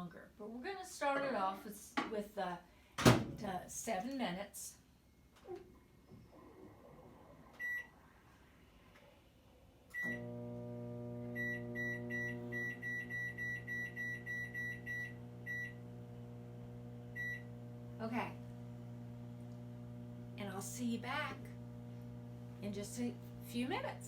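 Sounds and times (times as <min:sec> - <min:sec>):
microwave oven humming: 0:10.0 - 0:24.0
microwave keypad beep: 0:11.3 - 0:15.8, 0:17.1 - 0:17.5.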